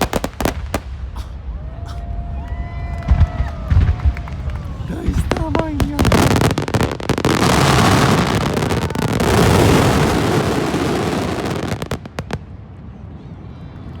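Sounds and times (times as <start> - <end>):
fireworks bangs and crackling: 0.0 - 1.2, 3.0 - 12.6.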